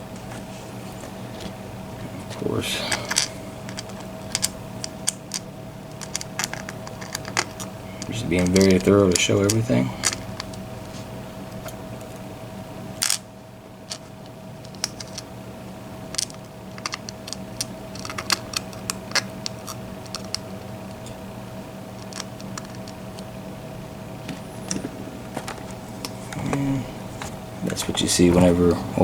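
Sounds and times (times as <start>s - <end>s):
steady hum: 0.0s - 29.0s
metal lock parts clicking: 2.9s - 10.6s, 13.0s - 13.2s, 13.9s - 15.3s, 16.1s - 21.2s, 22.0s - 23.3s.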